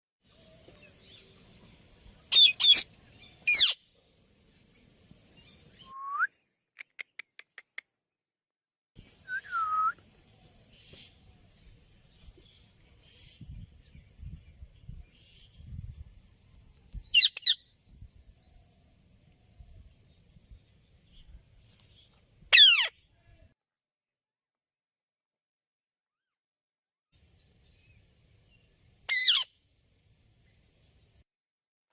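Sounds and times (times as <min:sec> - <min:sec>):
parakeet screeching: 0:02.3 - 0:02.8, 0:03.5 - 0:03.8, 0:22.5 - 0:22.9, 0:29.1 - 0:29.5.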